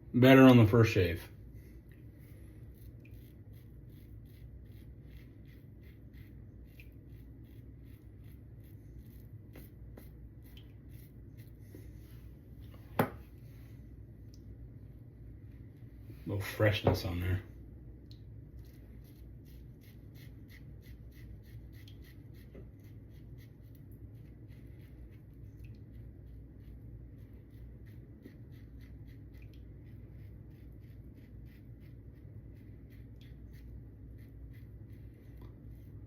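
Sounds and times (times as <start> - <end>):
razor scraping stubble: 1.9 - 11.9, 26.0 - 36.0.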